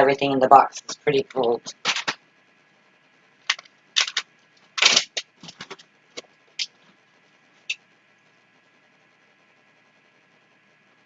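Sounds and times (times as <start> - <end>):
grocery packaging rustling: 1.7 - 2.2, 3.4 - 5.8
packaging crackle: 1.8 - 2.2, 3.4 - 5.8.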